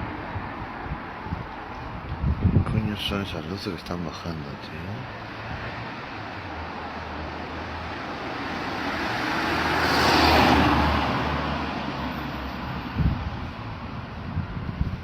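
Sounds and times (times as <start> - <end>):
road vehicle passing by: 5.0 - 15.0.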